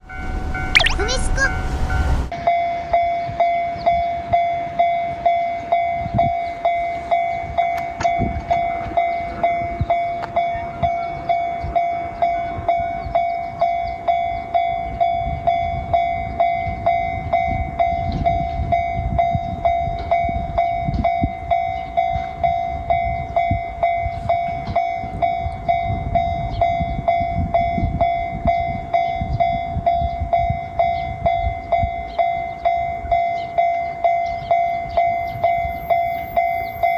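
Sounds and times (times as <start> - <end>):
low rumble of passing train: 1.5 - 36.9
level crossing alarm ringing: 32.0 - 36.9.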